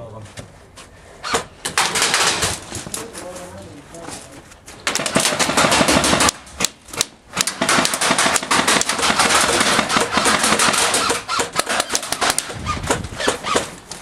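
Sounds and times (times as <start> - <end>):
airsoft guns firing: 1.3 - 2.7, 4.8 - 13.8.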